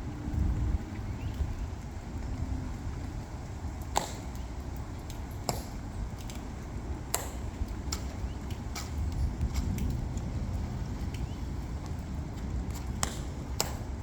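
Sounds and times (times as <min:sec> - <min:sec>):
low outdoor rumble: 0:00.0 - 0:14.0
metal-tapped heels clicking on stone: 0:11.0 - 0:13.9.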